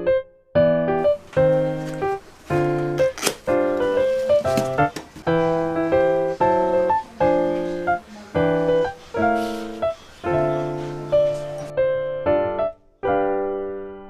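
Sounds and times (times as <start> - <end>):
slow piano chords: 0.0 - 14.0.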